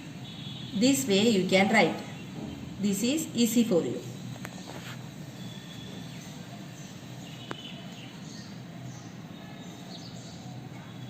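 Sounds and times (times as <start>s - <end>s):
background hum and hiss: 0.0s - 11.0s
faint high chirps: 5.3s - 11.0s.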